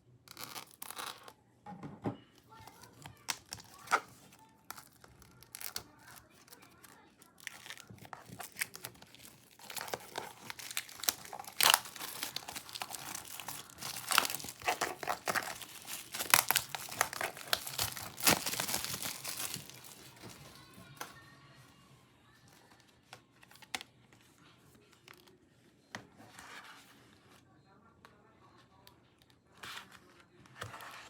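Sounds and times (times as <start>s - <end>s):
packaging tearing and crinkling: 0.3s - 1.3s, 3.2s - 20.5s.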